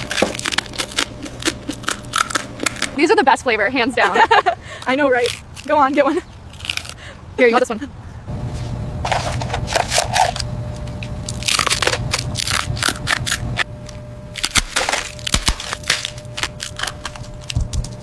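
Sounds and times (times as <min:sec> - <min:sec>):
crisps crunching while chewed: 0:00.0 - 0:03.0, 0:04.8 - 0:07.0, 0:09.0 - 0:18.0
faint steady hum: 0:08.2 - 0:18.0.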